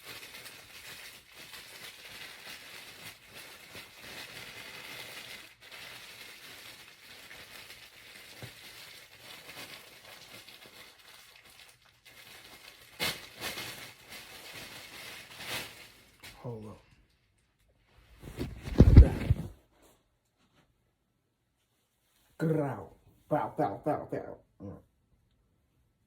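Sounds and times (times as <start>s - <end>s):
packaging crinkling and rustling: 0.0s - 16.4s, 18.2s - 19.6s.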